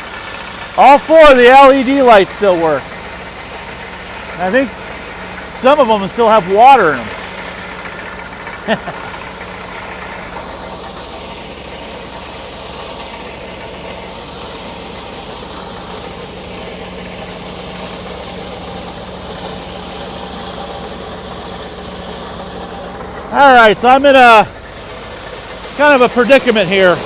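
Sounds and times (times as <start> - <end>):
combine harvester engine hum: 0.0 - 27.0
even hiss: 0.8 - 10.4.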